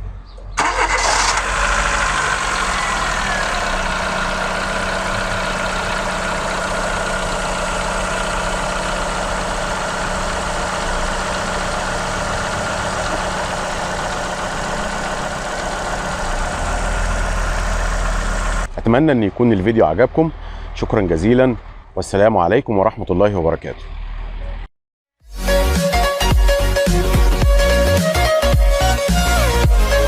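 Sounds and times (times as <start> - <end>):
car engine idling: 0.6 - 18.8.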